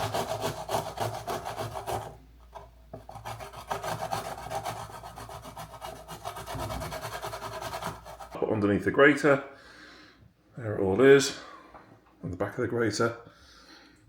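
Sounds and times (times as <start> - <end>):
ginger scraping on grater: 0.0 - 2.2, 3.0 - 8.4.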